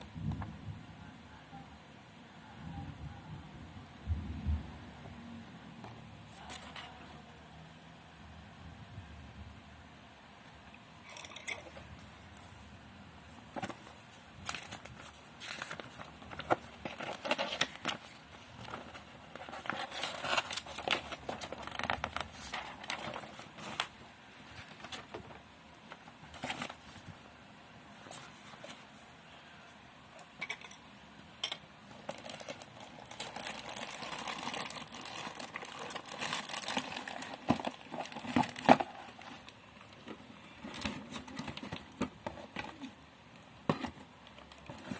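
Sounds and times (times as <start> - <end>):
packaging crinkling and rustling: 13.4 - 27.2, 31.9 - 43.0, 43.6 - 44.9.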